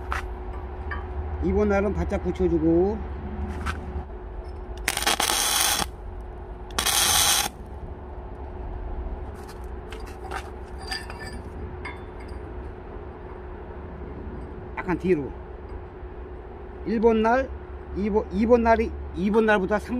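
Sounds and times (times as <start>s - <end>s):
low steady hum: 0.0s - 19.9s
welding bursts: 4.8s - 6.0s, 6.7s - 7.6s
light metal clinks: 10.0s - 12.6s.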